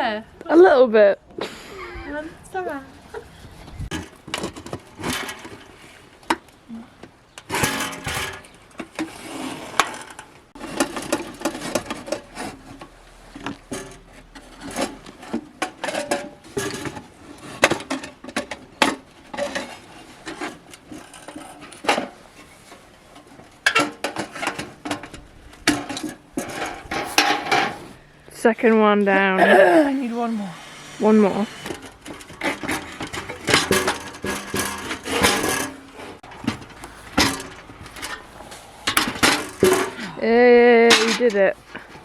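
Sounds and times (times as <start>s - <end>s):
wood knocking and scraping: 10.6s - 28.0s, 30.6s - 40.1s.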